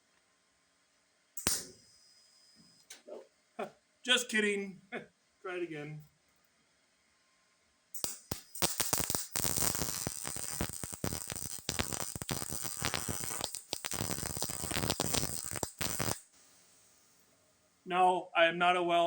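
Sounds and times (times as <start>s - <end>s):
welder arc crackling: 1.4s - 1.8s, 8.0s - 17.3s.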